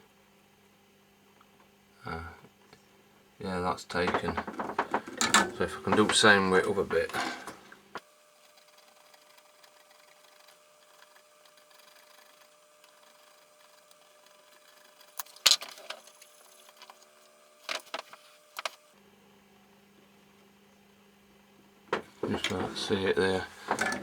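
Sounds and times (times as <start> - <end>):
faint steady hum: 0.0 - 24.0
hand tool scratching metal: 8.4 - 17.0.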